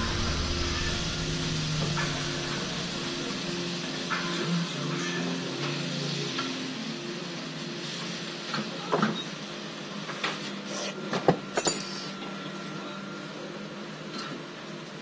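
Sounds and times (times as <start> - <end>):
low steady hum: 0.0 - 5.0
background music: 0.0 - 8.8.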